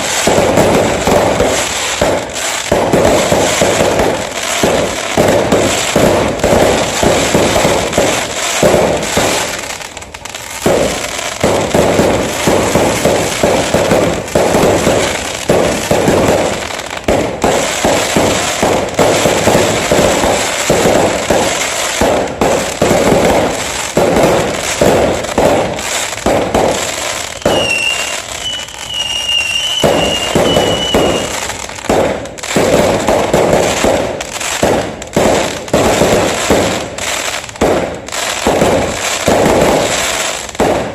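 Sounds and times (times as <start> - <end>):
fireworks and firecrackers banging: 0.0 - 40.9
high thin whistle: 27.4 - 31.3.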